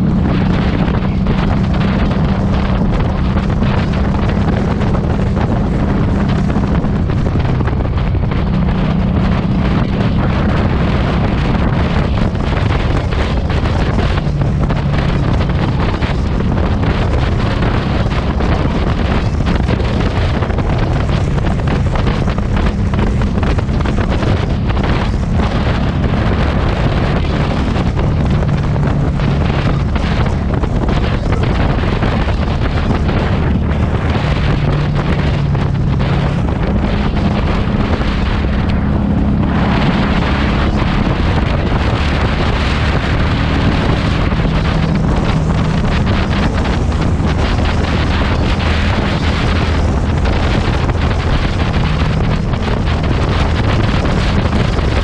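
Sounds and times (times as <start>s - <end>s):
motorcycle exhaust: 0.0s - 55.0s
wind buffeting microphone: 0.0s - 55.0s.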